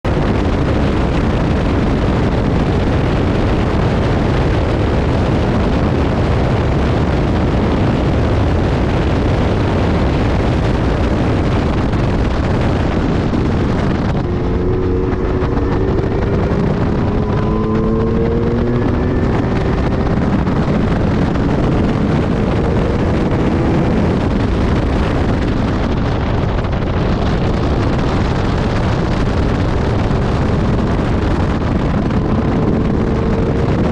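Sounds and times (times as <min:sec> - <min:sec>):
wind buffeting microphone: 0:00.0 - 0:33.9
car engine revving: 0:11.5 - 0:26.9, 0:28.2 - 0:33.9.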